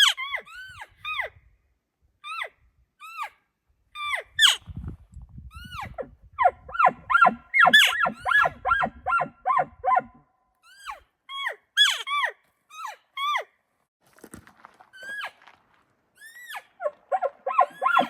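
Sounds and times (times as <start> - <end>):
animals yelping: 5.7 - 10.2, 16.4 - 18.0.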